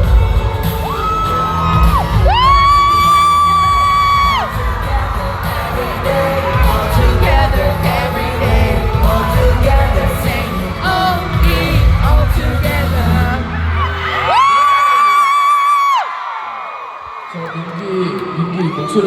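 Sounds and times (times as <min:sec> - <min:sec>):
heavy bass beat: 0:00.0 - 0:13.6
person singing: 0:00.0 - 0:14.7.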